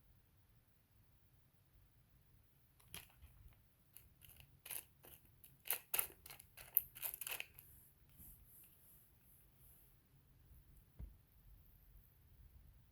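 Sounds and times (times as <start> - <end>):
stone chips clicking and scraping: 4.0 - 7.6.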